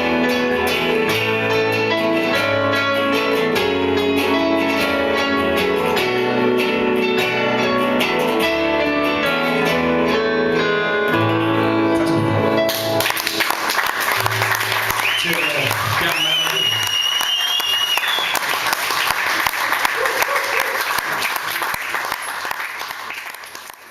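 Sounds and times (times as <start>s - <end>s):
live band guitar song: 0.0s - 21.5s
audience applause: 12.7s - 23.9s.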